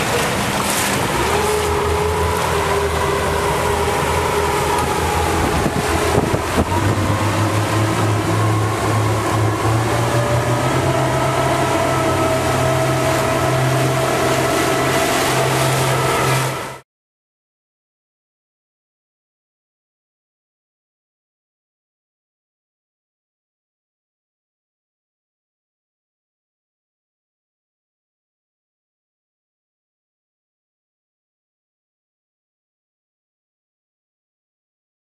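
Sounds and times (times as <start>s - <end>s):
engine running: 0.0s - 16.8s.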